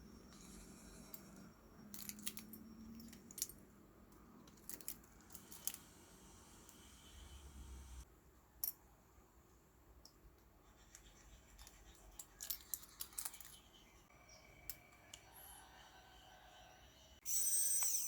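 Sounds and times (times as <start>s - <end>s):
small metal tools clicking: 0.3s - 5.9s, 11.6s - 13.6s.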